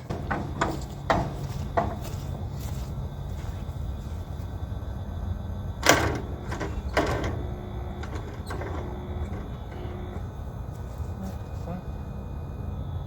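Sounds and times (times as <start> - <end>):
sharp bangs: 0.0 - 4.4, 5.8 - 10.3
tractor engine rumbling: 0.0 - 13.0.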